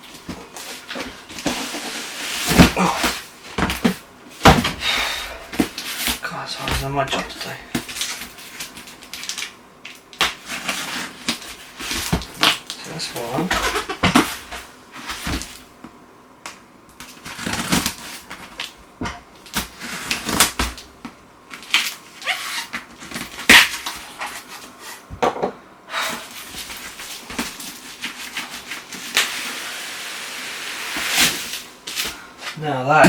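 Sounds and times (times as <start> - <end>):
cardboard packaging rustling: 0.0 - 4.8.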